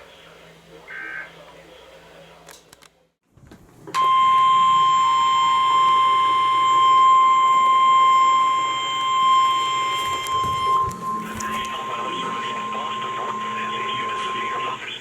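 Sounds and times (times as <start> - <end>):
steady high-pitched alarm tone: 4.0 - 15.0.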